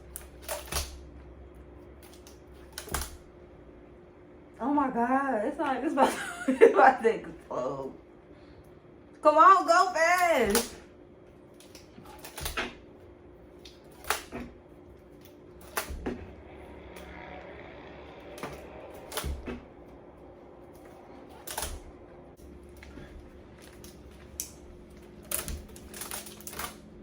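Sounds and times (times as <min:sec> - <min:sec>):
faint steady hum: 0:00.0 - 0:27.0
rubber bands snapping: 0:10.2 - 0:10.9.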